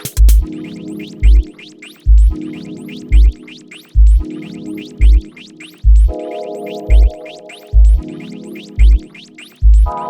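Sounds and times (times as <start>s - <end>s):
deep kick drum: 0.0s - 0.4s, 2.1s - 2.4s, 3.1s - 3.4s, 4.0s - 4.2s, 5.0s - 5.2s, 5.9s - 6.1s, 6.9s - 7.1s, 7.8s - 8.0s, 8.8s - 9.0s, 9.6s - 9.9s.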